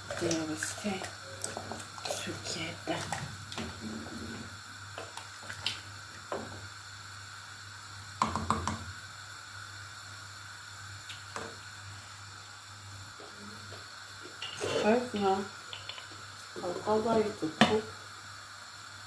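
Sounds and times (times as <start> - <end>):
spoon stirring wet rice: 0.0 - 3.8.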